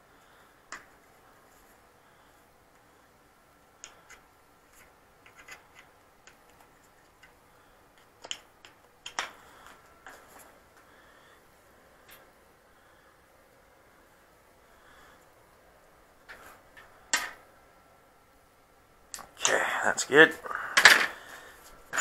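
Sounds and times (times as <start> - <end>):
small clicks and taps of tools: 3.8 - 7.4, 8.0 - 9.8.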